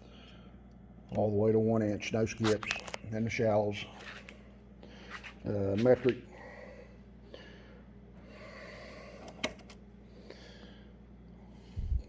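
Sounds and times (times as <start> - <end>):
person breathing: 4.8 - 5.4, 6.3 - 9.4, 10.0 - 12.0.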